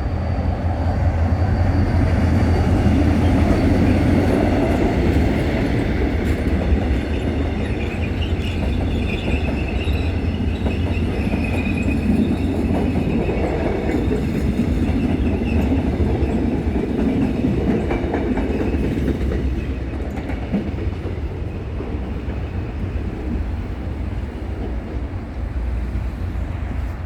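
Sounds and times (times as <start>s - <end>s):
train wheels rumbling on rails: 0.0s - 27.0s.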